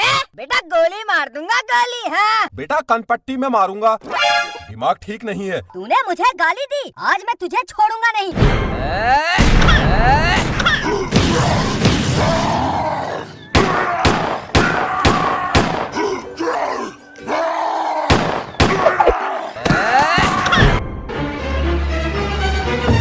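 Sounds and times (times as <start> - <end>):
voices groaning and crying out: 9.0 - 20.8.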